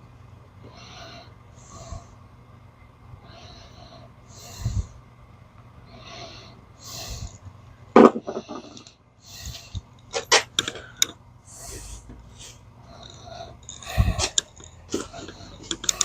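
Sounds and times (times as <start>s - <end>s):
person breathing: 0.6s - 2.2s, 3.2s - 5.0s, 5.8s - 7.4s, 10.7s - 16.0s.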